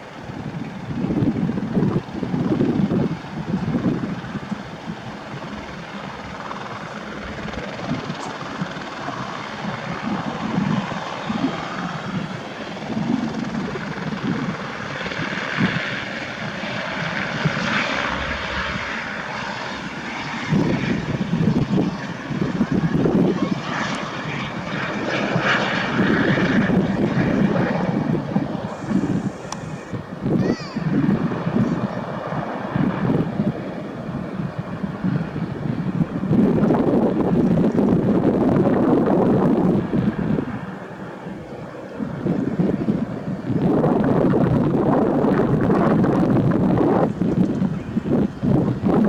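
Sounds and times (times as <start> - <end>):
helicopter rotor and engine: 0.0 - 49.0.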